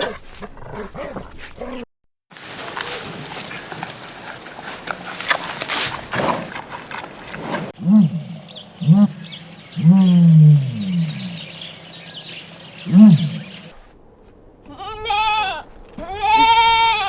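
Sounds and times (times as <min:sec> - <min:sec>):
low animal calls: 0:02.4 - 0:09.2, 0:14.6 - 0:17.0.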